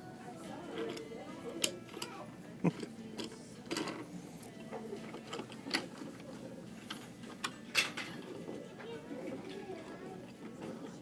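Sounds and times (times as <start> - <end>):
toy trains clicking and knocking: 2.8 - 4.1, 5.0 - 11.0.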